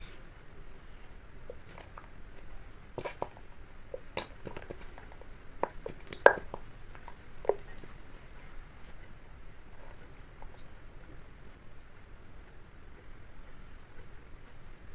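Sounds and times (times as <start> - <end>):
slime squelching by hand: 1.5 - 8.1.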